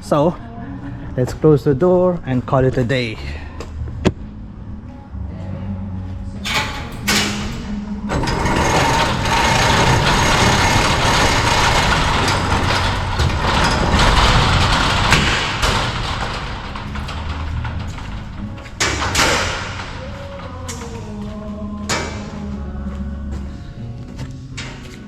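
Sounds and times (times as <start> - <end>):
door motor hum: 6.4 - 19.6
door rattling and scraping: 6.4 - 20.0.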